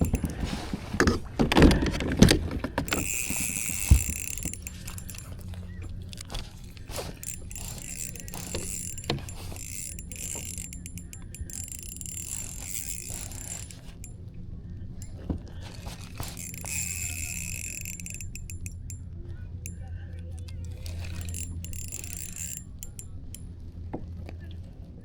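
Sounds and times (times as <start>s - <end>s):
fishing reel clicking and ratcheting: 0.0s - 0.8s, 1.6s - 23.6s.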